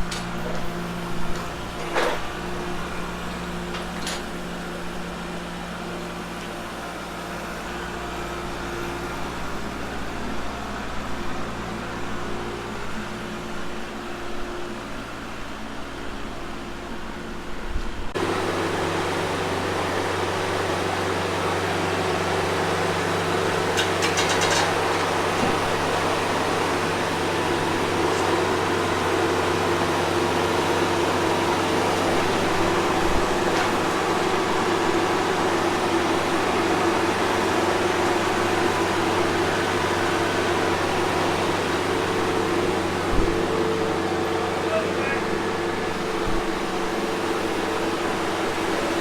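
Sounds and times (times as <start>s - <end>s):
engine running steadily: 0.0s - 49.0s.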